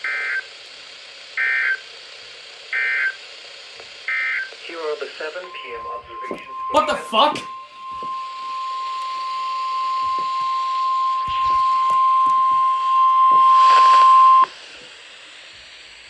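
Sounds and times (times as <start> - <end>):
steady warning beep tone: 5.2 - 14.5.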